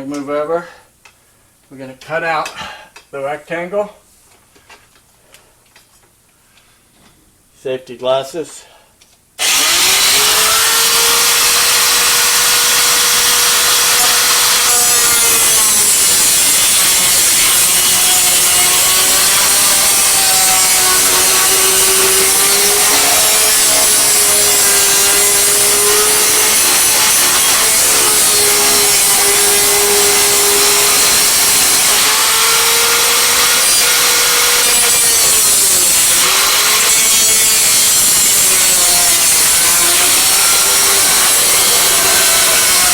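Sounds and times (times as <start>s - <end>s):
power tool cutting sheet metal: 9.4s - 42.9s.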